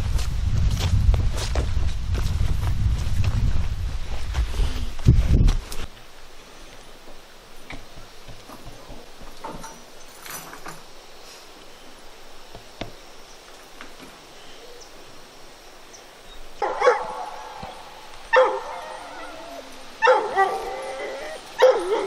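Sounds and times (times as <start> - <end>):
faint background noise: 0.0 - 22.0
hound baying: 16.6 - 22.0.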